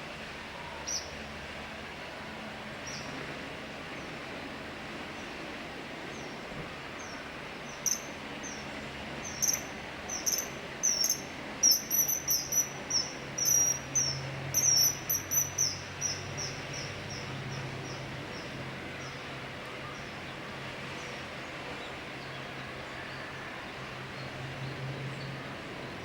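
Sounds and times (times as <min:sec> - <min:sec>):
kingfisher high piping calls: 0:07.7 - 0:08.6, 0:09.2 - 0:17.2.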